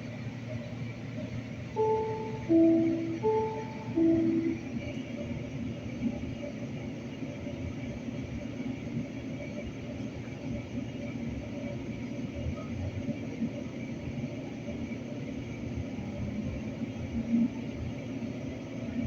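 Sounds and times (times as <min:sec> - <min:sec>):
faint hum: 0:00.0 - 0:07.0
light rail train rumbling: 0:00.0 - 0:19.0.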